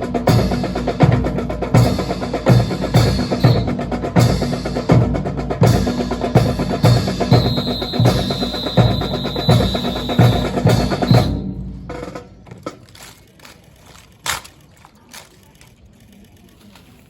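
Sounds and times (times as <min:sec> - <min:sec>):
snare drum: 0:05.6 - 0:13.2.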